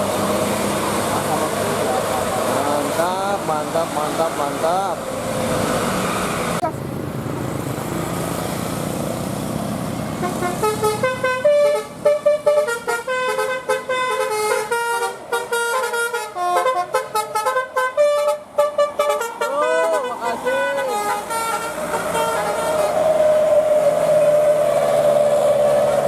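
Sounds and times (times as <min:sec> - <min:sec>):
vehicle rumble: 0:00.0 - 0:26.0
musical bus horn melody: 0:10.2 - 0:23.0.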